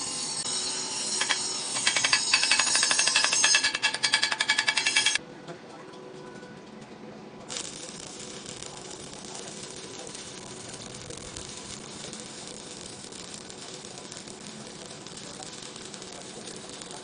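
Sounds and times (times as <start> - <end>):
welding arc crackling: 1.1 - 5.2, 7.5 - 17.0.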